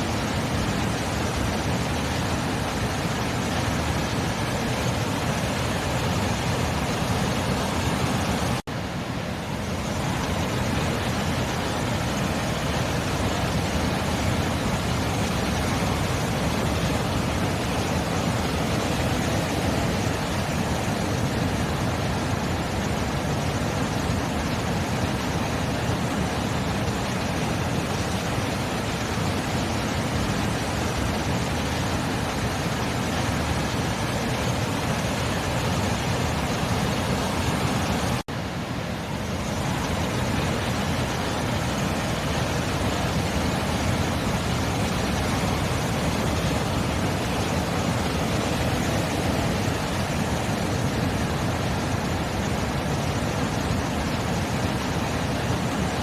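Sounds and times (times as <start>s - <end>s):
sea waves washing: 0.0s - 56.0s.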